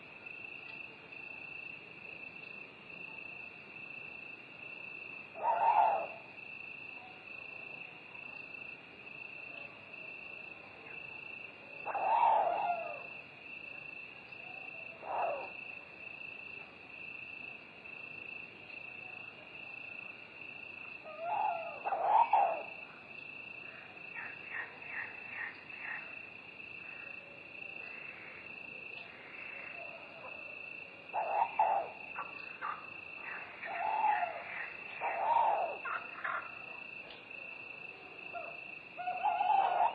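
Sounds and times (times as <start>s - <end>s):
crickets trilling: 0.0s - 39.9s
owl hooting: 11.8s - 13.1s, 21.0s - 22.7s, 31.1s - 36.8s, 38.3s - 39.9s.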